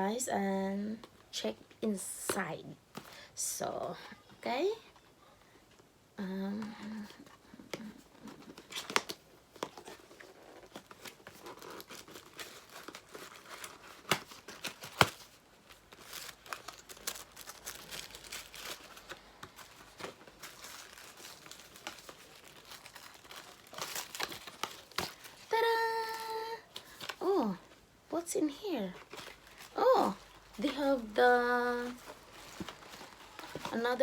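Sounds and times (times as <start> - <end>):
wrapping crinkling and tearing: 8.2 - 27.5, 28.9 - 34.0.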